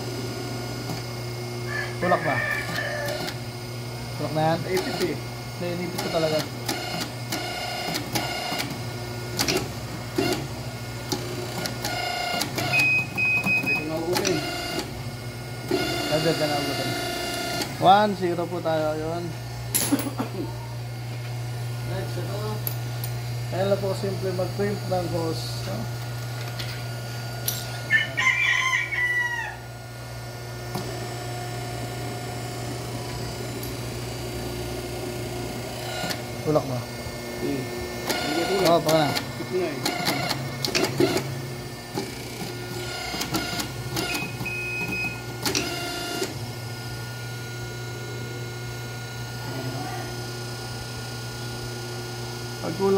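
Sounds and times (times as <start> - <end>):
machine motor hum: 0.0 - 52.9
rooster crowing: 1.7 - 3.4, 27.8 - 29.8
sharp machine clacks: 38.0 - 41.3.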